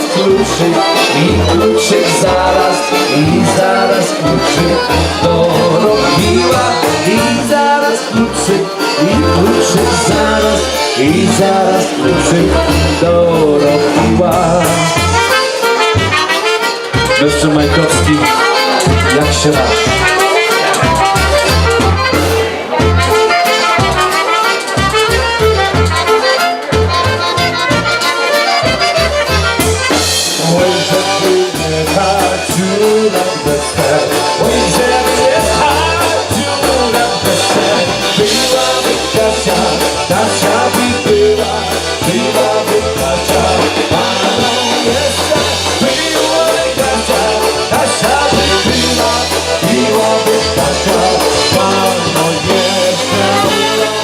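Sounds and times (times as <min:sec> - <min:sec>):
accordion: 0:00.0 - 0:54.0
polka band playing: 0:00.0 - 0:54.0
drum beat: 0:17.1 - 0:54.0.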